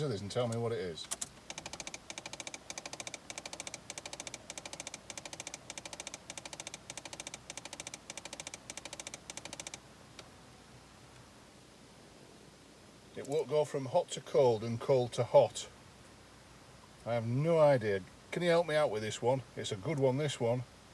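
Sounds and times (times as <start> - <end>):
car heater clicking: 0.4 - 10.3.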